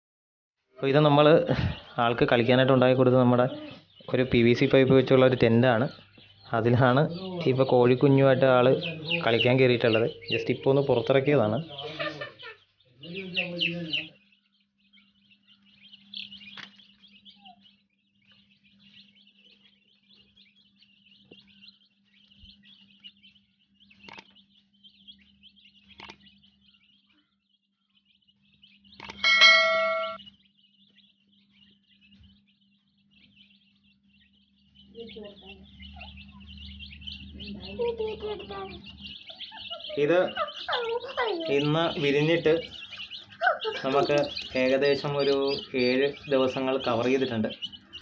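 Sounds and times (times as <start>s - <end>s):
chicks peeping: 0.7s - 48.0s
loud bell-like ringing tone: 29.2s - 30.2s.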